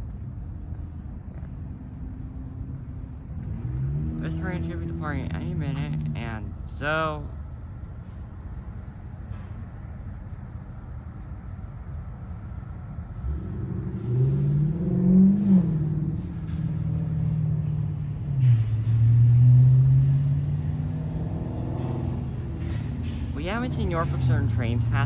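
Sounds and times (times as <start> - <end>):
train traction motors whining: 1.8 - 7.3.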